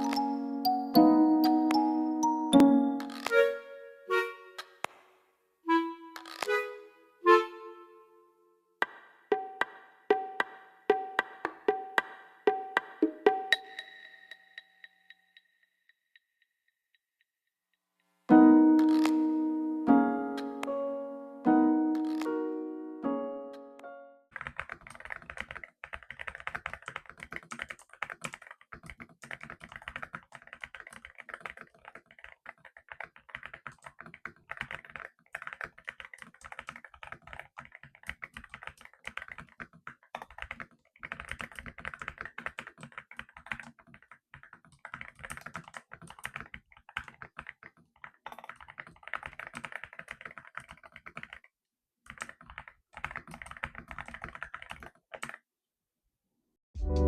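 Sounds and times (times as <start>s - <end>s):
fast typing on mechanical keyboard: 22.0s - 22.3s, 24.3s - 55.4s.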